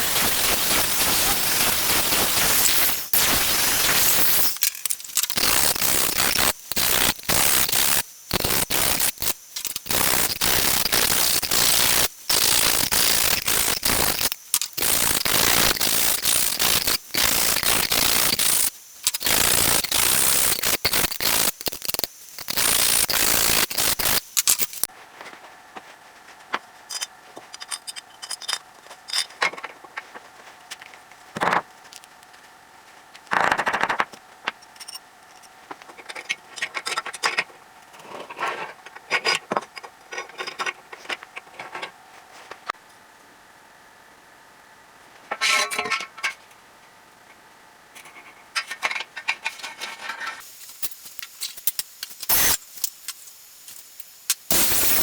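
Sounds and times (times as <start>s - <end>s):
mechanical clicks and scrapes: 0.0s - 24.9s.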